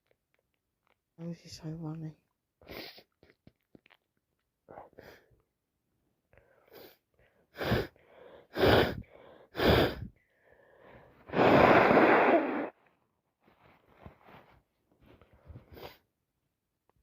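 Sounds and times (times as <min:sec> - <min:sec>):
intake of breath: 0:06.4 - 0:12.4
blast of breath: 0:06.6 - 0:12.7.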